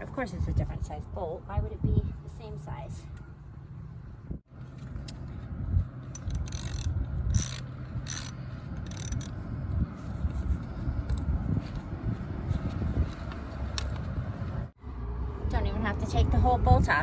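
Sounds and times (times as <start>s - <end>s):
ratchet wrench clicking: 6.1s - 9.4s.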